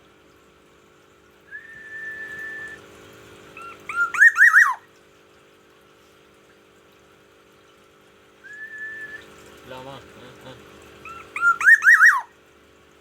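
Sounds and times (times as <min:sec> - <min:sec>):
bird whistling call: 0:01.5 - 0:02.8, 0:03.6 - 0:04.9, 0:08.4 - 0:09.3, 0:11.0 - 0:12.3
bird slurred rising-and-falling notes: 0:03.6 - 0:04.8, 0:11.1 - 0:12.2.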